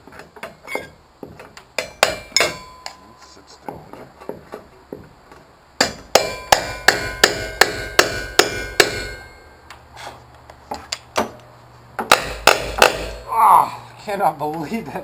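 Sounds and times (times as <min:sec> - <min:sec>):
hammer striking nail in metal: 0:01.8 - 0:03.0, 0:05.8 - 0:09.4, 0:12.0 - 0:13.3.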